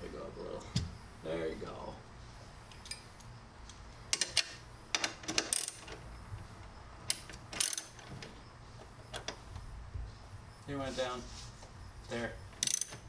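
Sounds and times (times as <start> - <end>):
low steady hum: 0.0 - 13.0
ratchet clicking: 2.7 - 6.0, 7.1 - 8.0, 12.6 - 13.0.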